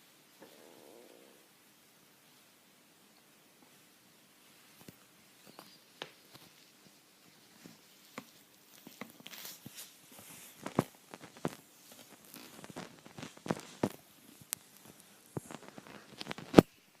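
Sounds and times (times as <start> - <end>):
dog snoring: 0.4 - 1.5.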